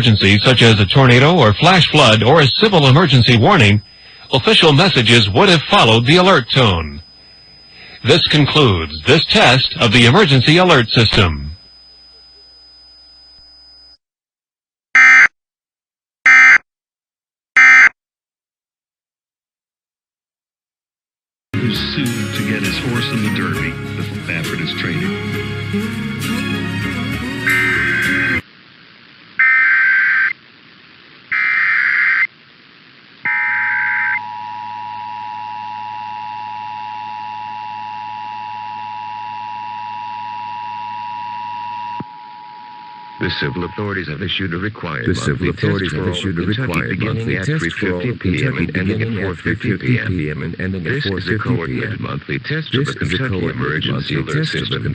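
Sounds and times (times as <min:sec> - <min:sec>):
digital data tone bursts: 0:00.0 - 0:11.6, 0:29.4 - 0:30.4, 0:33.2 - 0:43.9, 0:45.0 - 0:50.0
faint steady hum: 0:00.0 - 0:14.0, 0:22.5 - 0:54.9.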